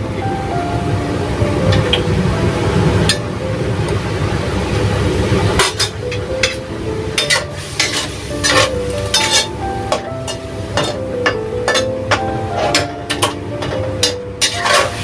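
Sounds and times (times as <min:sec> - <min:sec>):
food sizzling: 0:04.6 - 0:11.9, 0:12.6 - 0:15.0
spatula scraping a pan: 0:07.2 - 0:09.5, 0:14.0 - 0:15.0.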